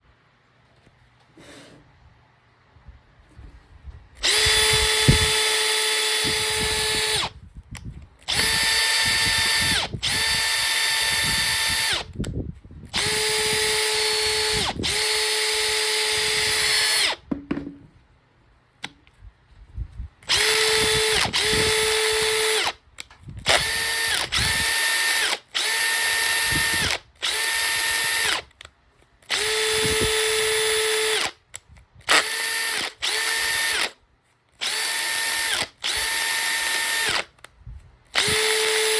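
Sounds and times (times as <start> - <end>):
cordless drill whining: 4.2 - 17.3, 20.2 - 31.4, 32.0 - 34.0, 34.6 - 38.9.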